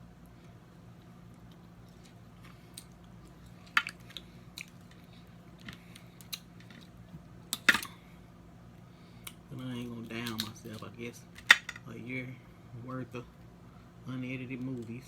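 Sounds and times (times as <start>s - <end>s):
chewing: 0.3s - 7.0s
crab shell cracking: 1.3s - 6.9s, 10.2s - 10.8s.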